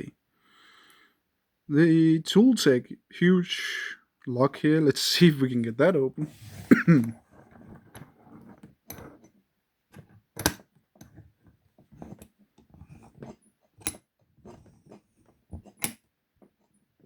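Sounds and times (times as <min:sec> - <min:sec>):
padlock clicking and rattling: 0:09.9 - 0:11.3, 0:12.9 - 0:14.1, 0:15.6 - 0:16.0.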